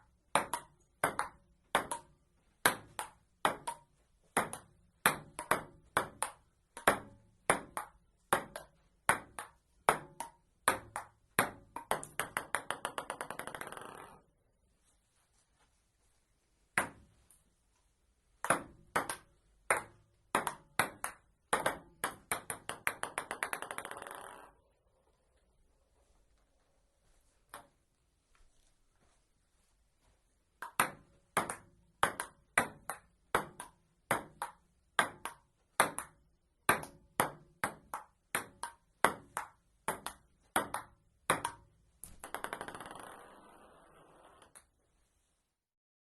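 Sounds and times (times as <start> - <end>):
ping-pong ball clicking off bats: 0.3 - 14.2, 18.4 - 24.6, 30.6 - 43.7
ping-pong ball bouncing: 0.3 - 14.3, 16.8 - 17.1, 18.4 - 24.7, 30.6 - 44.7.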